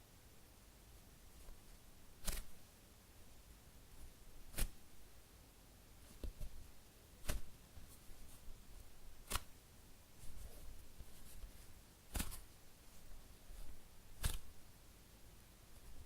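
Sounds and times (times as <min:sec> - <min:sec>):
fingers patting foam toy: 0:12.1 - 0:12.4, 0:14.2 - 0:14.5.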